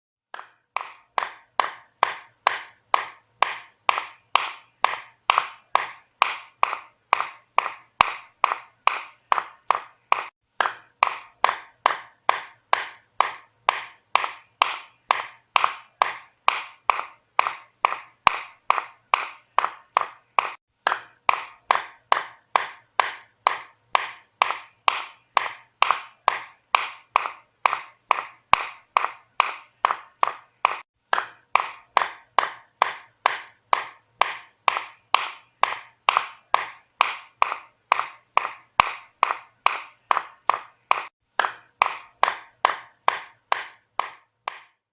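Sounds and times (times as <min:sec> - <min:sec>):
hammer striking: 0:00.3 - 0:44.8.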